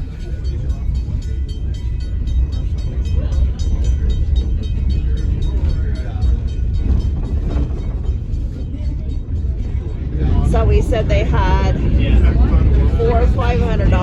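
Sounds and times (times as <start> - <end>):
wheels rattling and clicking: 0.0 - 10.6
rail car rumbling on track: 0.0 - 14.0.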